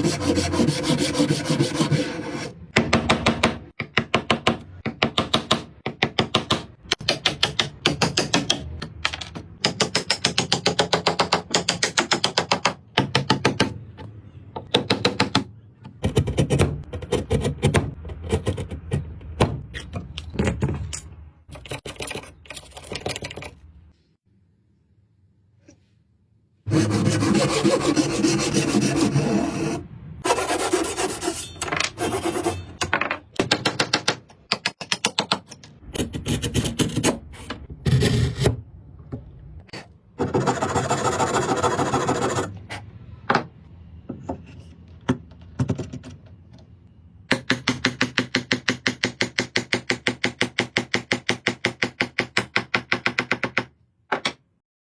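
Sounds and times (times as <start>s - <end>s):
rasp scraping wood: 0.0s - 2.6s, 26.7s - 32.6s.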